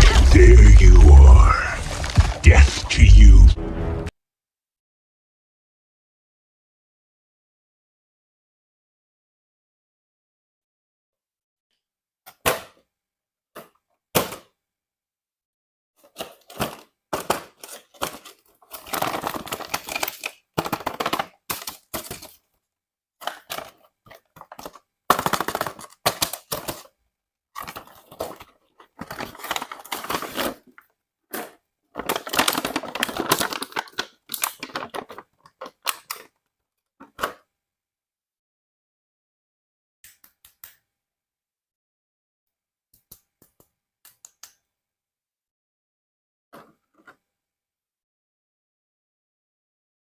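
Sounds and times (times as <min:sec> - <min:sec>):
packaging crinkling: 0:01.6 - 0:02.7, 0:16.2 - 0:22.4, 0:27.6 - 0:36.4.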